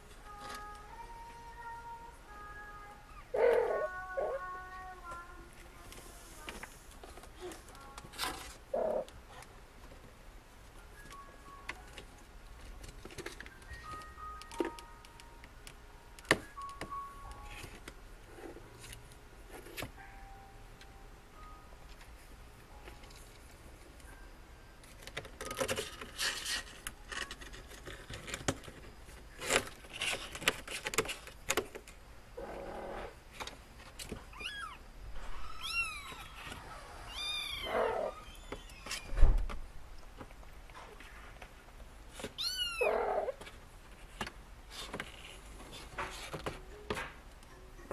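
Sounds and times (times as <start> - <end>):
kittens mewing: 3.2 - 4.6, 35.4 - 38.4, 42.4 - 43.4.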